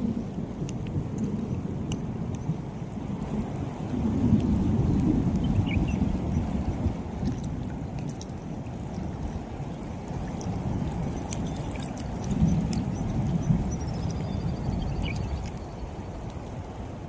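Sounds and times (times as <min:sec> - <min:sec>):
heavy rain falling: 0:00.0 - 0:17.0.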